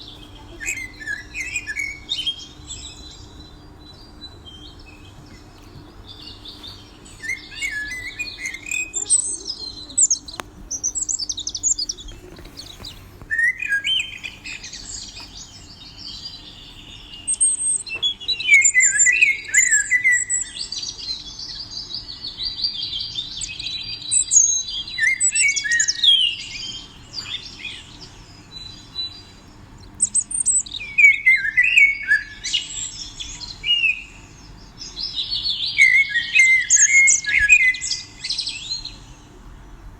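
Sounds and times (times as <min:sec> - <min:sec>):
songbirds chirping and trilling: 0:00.0 - 0:39.9.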